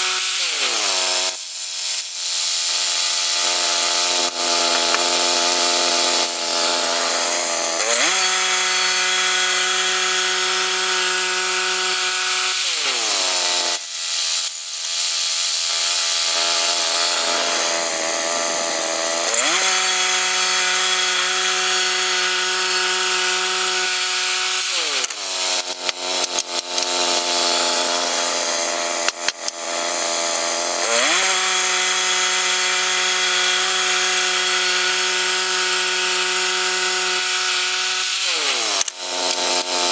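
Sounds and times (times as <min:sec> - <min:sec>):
sawmill petrol engine sawing: 0:00.0 - 0:39.9
sharp clicks: 0:24.8 - 0:27.1, 0:29.0 - 0:29.6.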